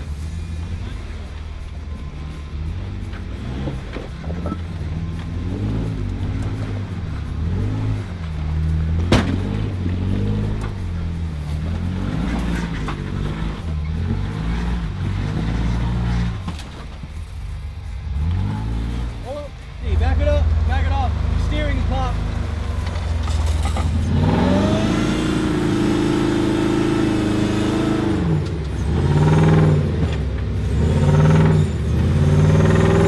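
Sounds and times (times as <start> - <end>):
engine revving: 0.0 - 33.0
sharp knock: 9.0 - 9.8.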